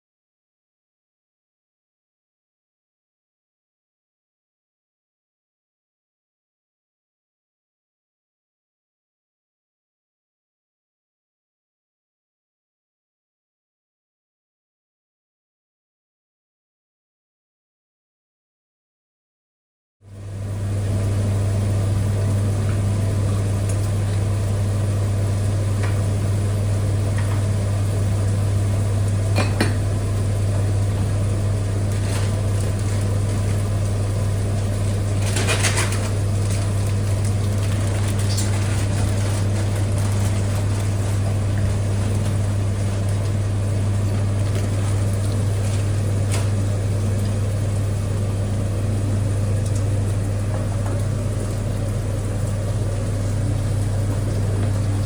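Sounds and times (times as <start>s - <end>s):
kitchen appliance humming: 20.0s - 55.0s
kitchenware clatter: 29.3s - 29.8s
kitchenware clinking: 29.4s - 29.8s.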